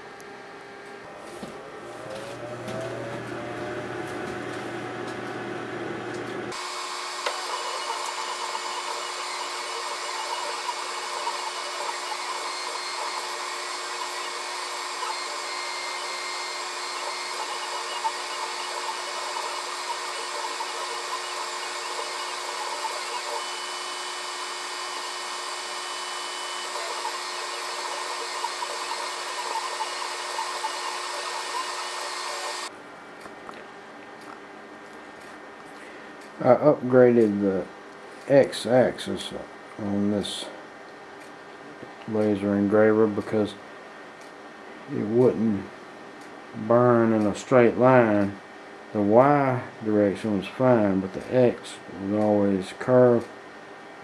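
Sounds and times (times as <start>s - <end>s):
laser engraver fan whir: 0.0s - 33.2s.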